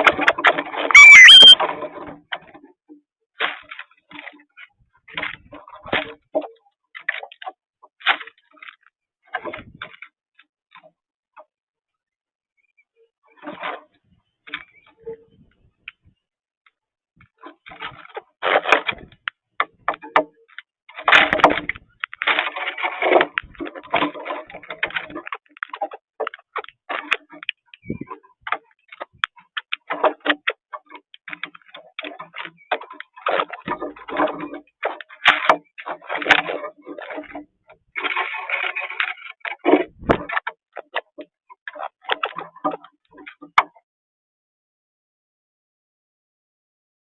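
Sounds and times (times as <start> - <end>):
cowbirds clicking and chattering: 18.9 - 43.6.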